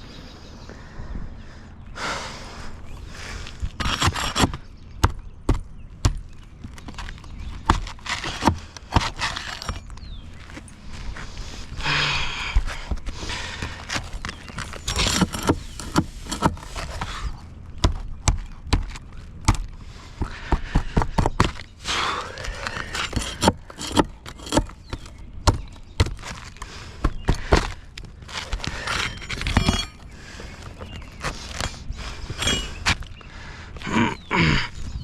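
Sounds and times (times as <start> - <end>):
scraping or rubbing: 7.9 - 9.8, 14.0 - 17.1, 22.6 - 24.8, 28.3 - 30.0.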